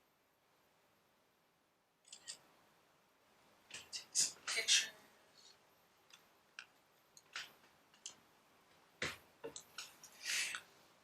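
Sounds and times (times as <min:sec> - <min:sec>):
small clicks and taps: 0:06.1 - 0:08.2.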